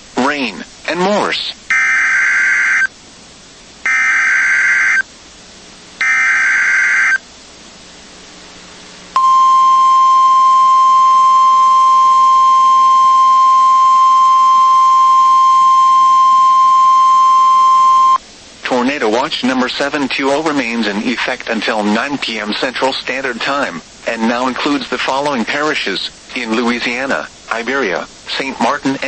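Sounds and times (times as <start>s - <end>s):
steady warning alarm tone: 1.7s - 2.9s, 3.9s - 5.0s, 6.0s - 7.2s, 9.2s - 18.2s.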